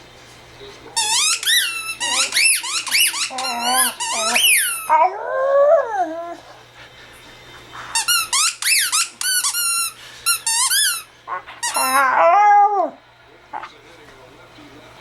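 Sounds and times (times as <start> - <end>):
rubber squeaky toy squeaking: 1.0 - 5.0, 8.0 - 11.0, 11.6 - 12.1
puppy vocal noise: 1.0 - 5.2, 11.3 - 13.8.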